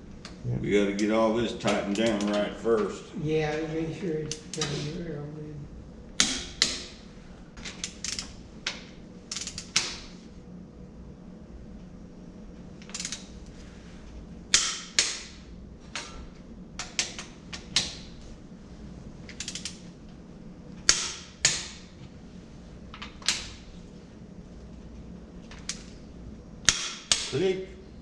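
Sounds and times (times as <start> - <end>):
torque wrench ratchet clicks: 9.3 - 9.8, 12.8 - 13.3, 19.3 - 19.8
torque wrench clicking off: 9.3 - 10.0, 12.8 - 13.3, 19.3 - 19.8.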